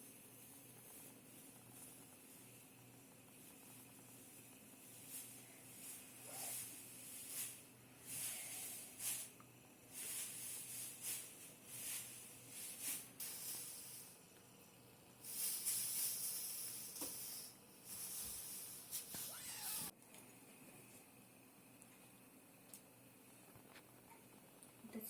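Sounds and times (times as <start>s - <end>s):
faint steady low hum: 0.0s - 25.0s
rustling and crinkling: 0.4s - 13.6s.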